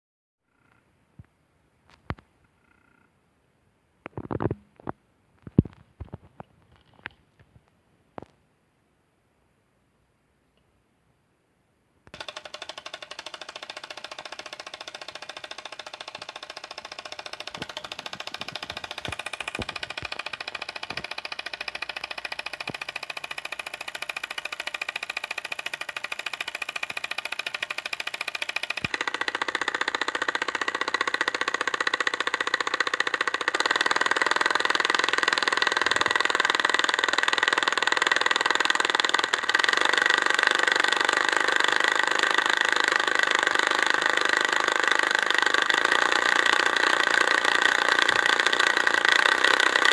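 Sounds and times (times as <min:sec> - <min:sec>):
solenoid engine clattering: 0:12.1 - 0:49.9.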